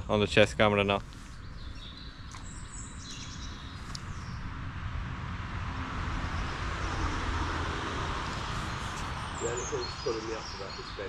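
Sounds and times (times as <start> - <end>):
wind rumbling on microphone: 0.0 - 11.0
faint bird chirps: 8.3 - 11.0.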